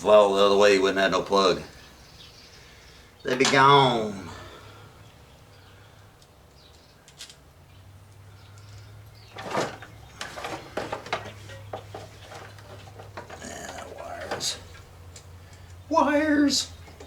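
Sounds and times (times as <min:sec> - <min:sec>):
tools and parts knocking: 0:09.3 - 0:14.6.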